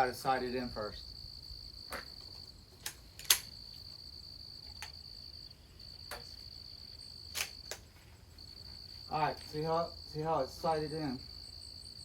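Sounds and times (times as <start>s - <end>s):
crickets trilling: 0.0s - 12.0s
sharp crack: 2.8s - 3.6s, 7.3s - 7.9s.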